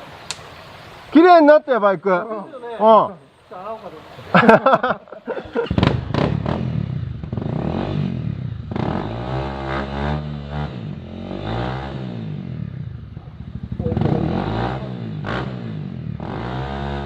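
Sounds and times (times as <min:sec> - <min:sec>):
motorcycle engine revving: 0:05.5 - 0:17.0.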